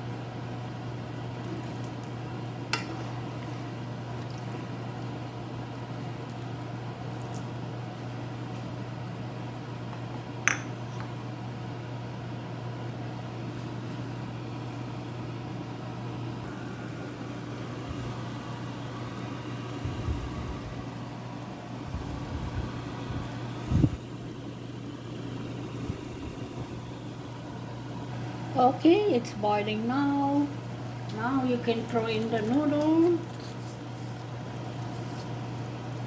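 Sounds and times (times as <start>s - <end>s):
water heating in a pot: 0.0s - 7.6s, 16.5s - 36.0s
steady low hum: 0.0s - 36.0s.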